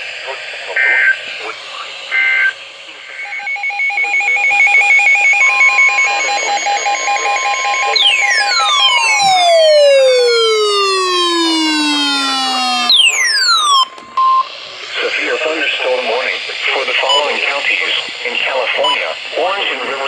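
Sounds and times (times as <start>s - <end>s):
steady warning alarm tone: 3.2s - 14.5s
fast two-pitch beeping: 7.2s - 14.5s
falling siren-like sweeps: 8.0s - 14.0s.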